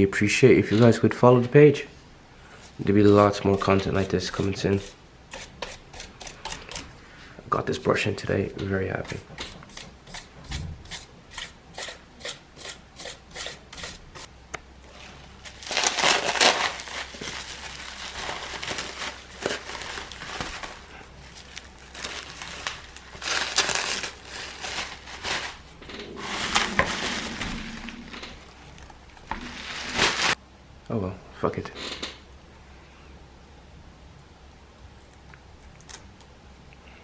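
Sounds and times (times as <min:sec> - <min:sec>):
brush scrubbing a tablet frame: 0:02.8 - 0:06.8, 0:09.0 - 0:14.3.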